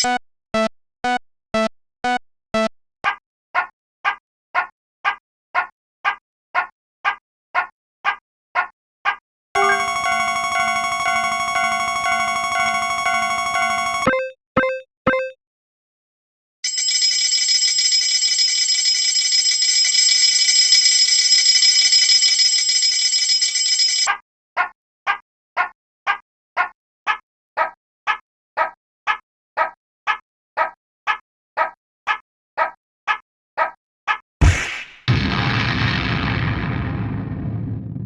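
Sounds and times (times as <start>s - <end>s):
short beeps: 0.0s - 2.7s, 9.6s - 15.4s
bell ringing steadily: 9.6s - 14.1s, 16.7s - 24.1s
level-crossing warning bell: 9.6s - 14.1s, 16.6s - 24.1s.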